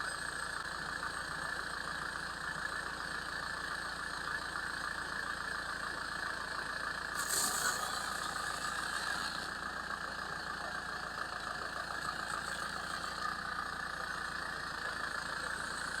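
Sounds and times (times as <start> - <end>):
loud crackle: 7.2 - 9.6.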